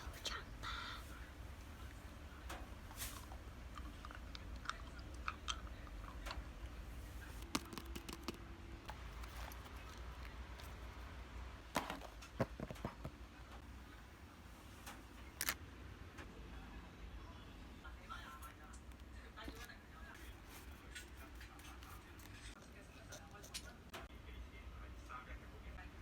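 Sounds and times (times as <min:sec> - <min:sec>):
paper handling clicks and crinkles: 0:07.2 - 0:11.0, 0:14.8 - 0:15.6, 0:18.3 - 0:23.8.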